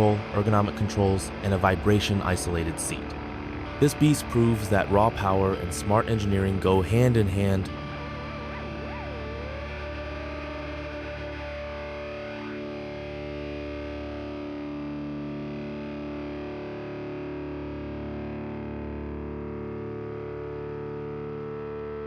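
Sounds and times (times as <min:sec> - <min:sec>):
distorted electric guitar music: 0:00.0 - 0:22.0.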